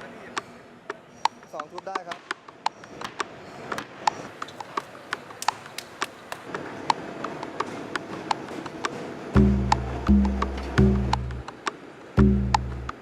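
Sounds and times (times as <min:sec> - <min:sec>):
low music: 0:09.4 - 0:11.4, 0:12.2 - 0:13.0.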